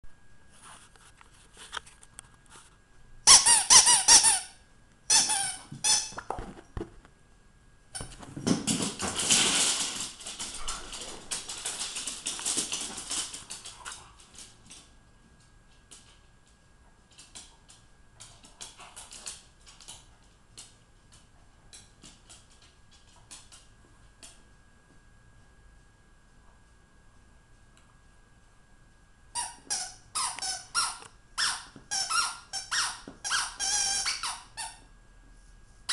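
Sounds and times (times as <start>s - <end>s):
squeaky dog toy squeaks: 3.3s - 6.2s, 29.4s - 34.8s.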